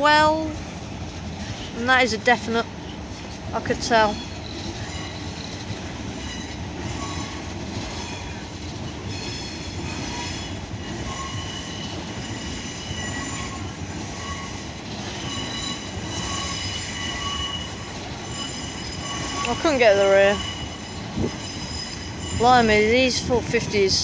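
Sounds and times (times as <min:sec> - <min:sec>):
train wheels rumbling: 0:00.0 - 0:24.0
high-pitched wheel squeals: 0:04.1 - 0:08.4, 0:09.0 - 0:23.1.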